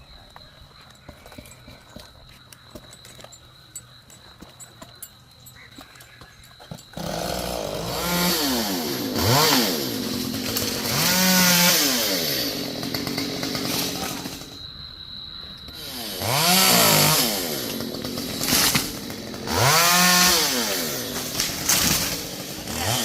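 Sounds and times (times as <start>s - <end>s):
chainsaw revving: 6.9s - 14.6s, 15.7s - 23.0s.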